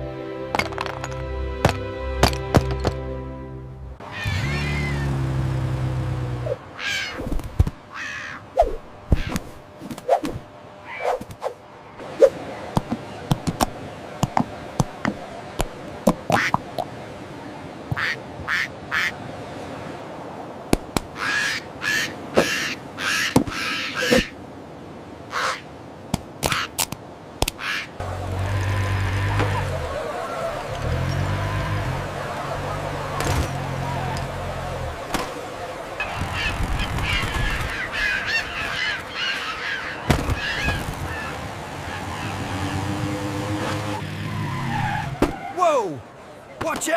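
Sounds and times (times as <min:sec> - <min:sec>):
seagull squawks: 0:04.0 - 0:05.2, 0:06.8 - 0:07.3, 0:07.9 - 0:09.4, 0:10.8 - 0:11.2, 0:16.3 - 0:16.6, 0:17.9 - 0:19.2, 0:21.1 - 0:24.4, 0:25.3 - 0:25.7, 0:26.4 - 0:26.8, 0:27.5 - 0:43.0.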